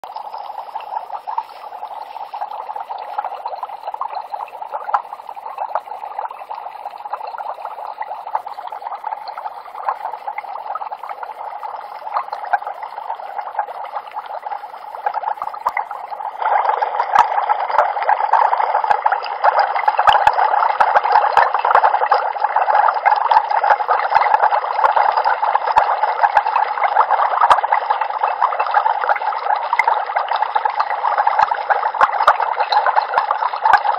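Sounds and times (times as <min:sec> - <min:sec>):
liquid bubbling and gurgling: 0:00.0 - 0:33.9.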